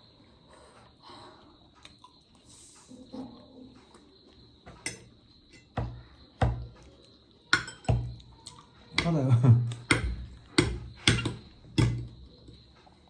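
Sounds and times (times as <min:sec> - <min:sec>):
forks knocking on plates: 0:04.7 - 0:06.7, 0:07.5 - 0:08.2, 0:09.0 - 0:12.2.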